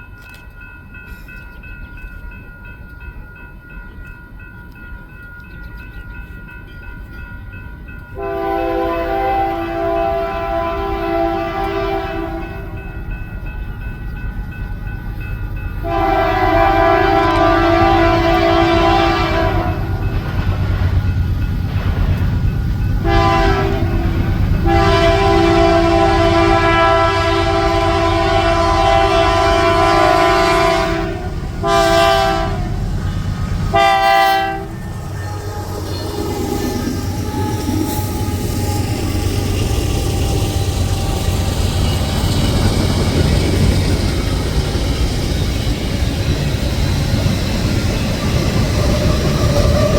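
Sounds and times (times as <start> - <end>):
passing train rumble: 0.0 - 49.9
locomotive air horn blasts: 8.2 - 12.8, 15.8 - 20.0, 23.0 - 39.6.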